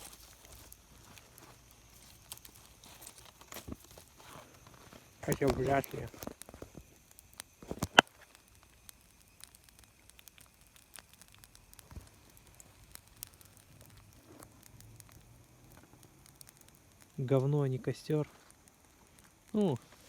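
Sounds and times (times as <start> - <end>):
campfire crackles and pops: 0.0 - 20.0.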